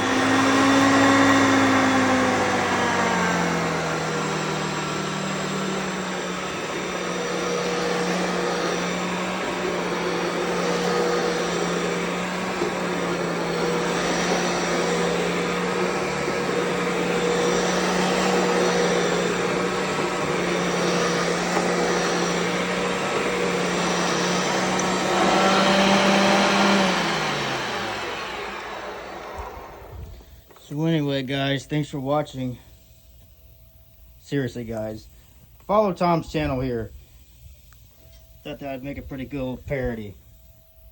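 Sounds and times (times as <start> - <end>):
upright vacuum cleaner running: 0.0 - 40.9.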